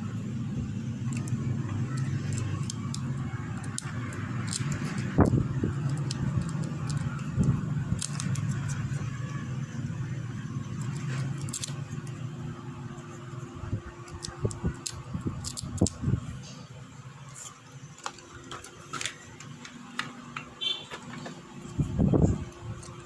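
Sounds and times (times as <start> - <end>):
hand tools clicking and scratching: 1.1 - 9.2, 10.8 - 12.2, 14.0 - 16.0.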